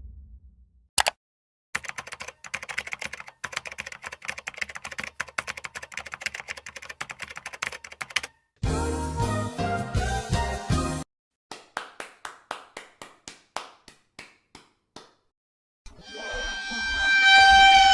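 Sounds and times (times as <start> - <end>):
rapid keyboard typing: 1.8 - 8.4
music: 8.6 - 11.1.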